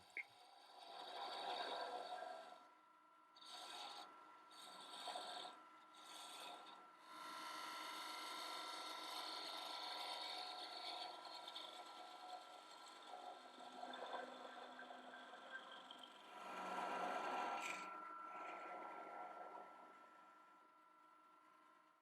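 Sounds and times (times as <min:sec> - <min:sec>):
wood lathe spinning: 0:00.0 - 0:02.6, 0:03.4 - 0:06.8, 0:07.9 - 0:16.7.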